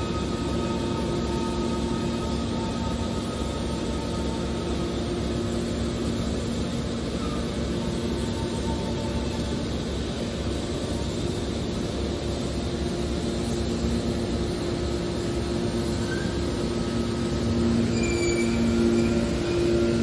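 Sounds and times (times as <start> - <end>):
hydraulic baler humming: 0.0 - 20.0
faint high squeals: 15.4 - 20.0.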